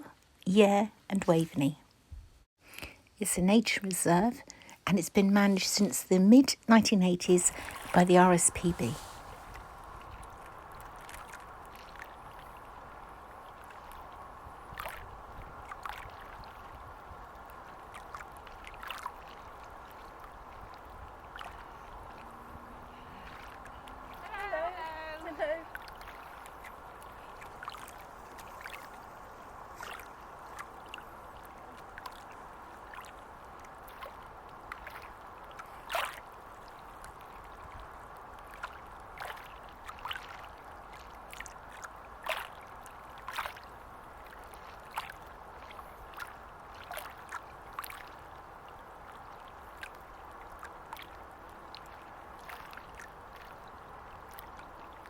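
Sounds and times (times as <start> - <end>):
small waves lapping: 6.8 - 55.0
water plops and splashes: 14.7 - 16.8, 25.7 - 36.2, 44.6 - 48.2.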